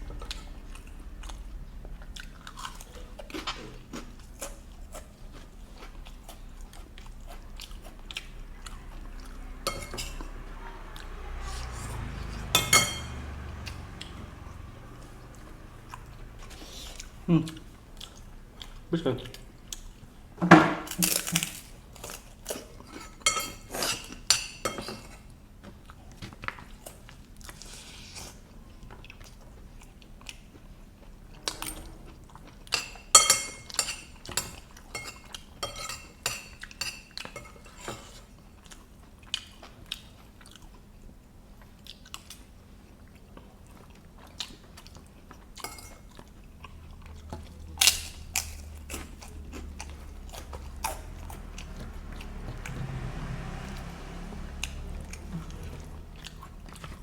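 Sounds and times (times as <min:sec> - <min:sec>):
chewing and crunching noodles: 0:00.0 - 0:57.0
cutlery clinking on a plate: 0:09.6 - 0:10.4, 0:12.3 - 0:13.4, 0:22.9 - 0:25.2, 0:32.7 - 0:38.2, 0:45.6 - 0:46.1.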